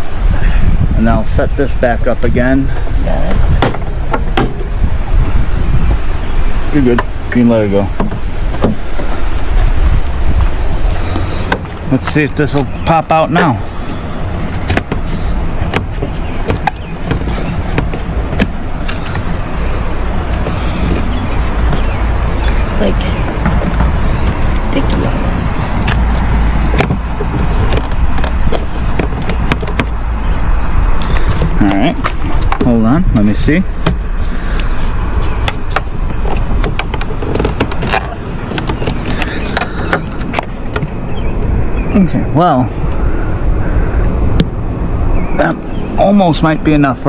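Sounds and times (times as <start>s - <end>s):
steady low rumble: 0.0s - 47.0s
sharp clicks and knocks: 15.7s - 19.3s, 25.8s - 30.4s, 35.4s - 41.0s.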